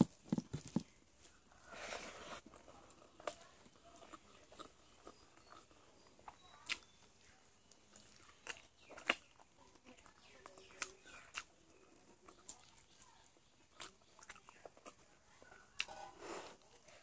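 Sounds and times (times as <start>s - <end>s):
person chewing chicken: 2.6s - 7.0s
sharp crunches and mouth clicks: 3.2s - 6.9s, 7.9s - 9.6s.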